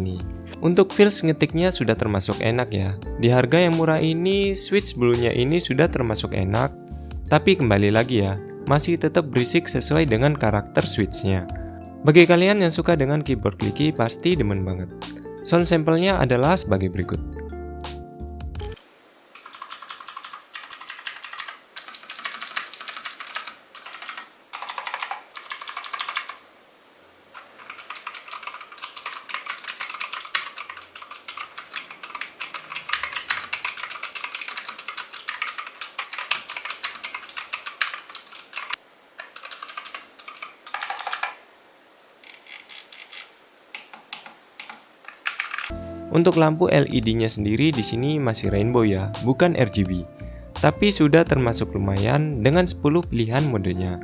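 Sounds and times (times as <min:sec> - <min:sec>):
mechanical keyboard typing: 0:19.4 - 0:26.4, 0:27.4 - 0:41.4, 0:42.3 - 0:45.8.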